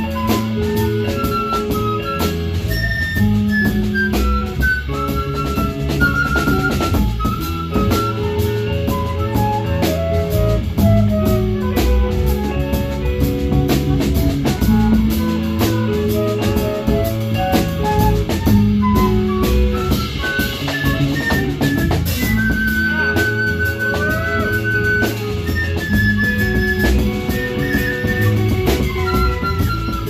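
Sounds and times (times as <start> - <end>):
bass guitar: 0.0 - 30.0
drum kit groove: 0.0 - 30.0
guitar: 0.0 - 30.0
high melodic line: 0.0 - 30.0.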